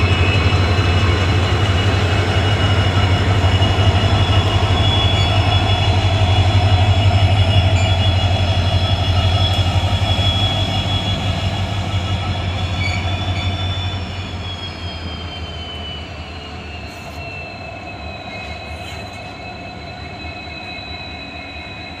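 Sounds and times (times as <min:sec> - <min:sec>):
diesel locomotives humming: 0:00.0 - 0:22.0
high steady whines: 0:00.0 - 0:22.0.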